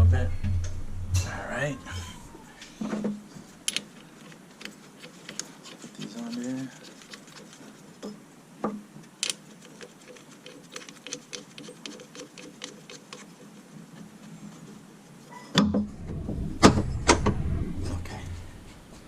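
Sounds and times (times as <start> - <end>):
handling noise: 0.4 - 17.6
metallic clicks of nuts and bolts: 3.6 - 7.0, 9.1 - 13.3.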